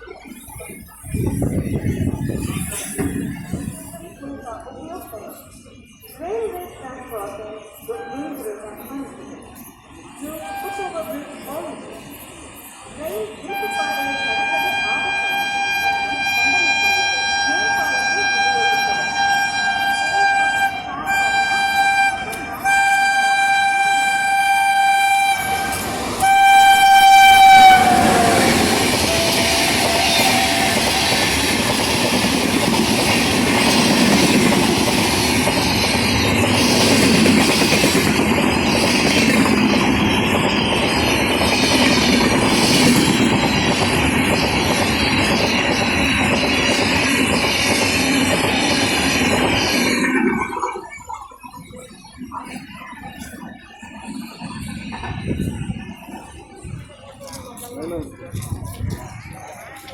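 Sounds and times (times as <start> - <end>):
train coaches rumbling past: 0.0 - 59.9
locomotive horn blasts: 10.4 - 11.0, 13.5 - 31.2
wheel clatter on rail joints: 15.3 - 59.9.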